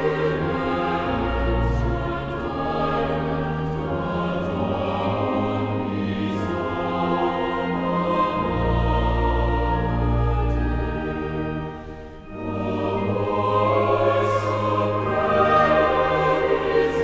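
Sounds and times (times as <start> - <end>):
choir singing: 0.0 - 17.0.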